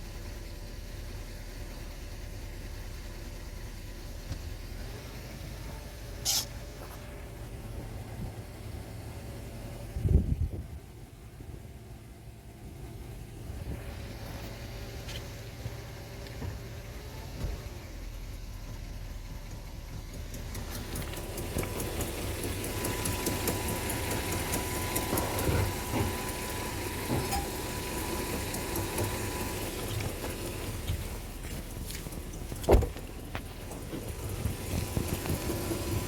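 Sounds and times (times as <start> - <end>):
car engine idling: 0.0 - 36.0
engine knocking tick: 0.1 - 4.8, 18.3 - 36.0.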